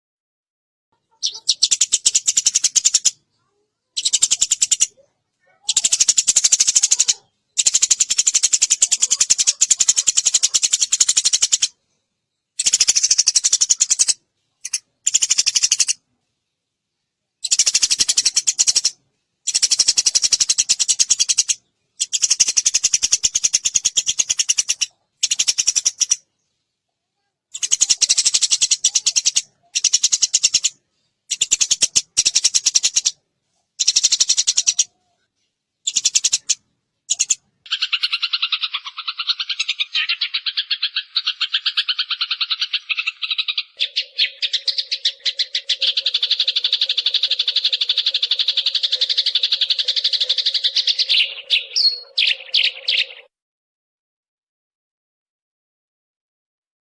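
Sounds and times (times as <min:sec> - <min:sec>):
sparrow chirping: 0:01.0 - 0:11.8, 0:12.4 - 0:16.0, 0:17.4 - 0:26.7, 0:27.5 - 0:33.2, 0:33.8 - 0:35.2, 0:35.8 - 0:53.3.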